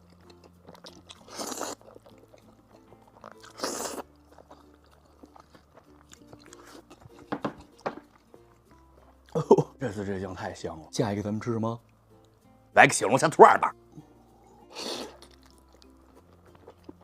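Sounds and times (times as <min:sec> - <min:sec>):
soft chewing: 0:00.0 - 0:09.7, 0:13.9 - 0:17.0
quiet background music: 0:00.0 - 0:17.0
loud noodle slurps: 0:01.2 - 0:01.9, 0:03.3 - 0:04.1, 0:14.6 - 0:15.3.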